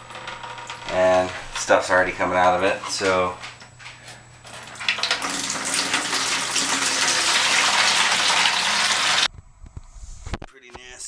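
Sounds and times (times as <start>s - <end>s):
water splashing into a bucket: 4.5s - 9.3s.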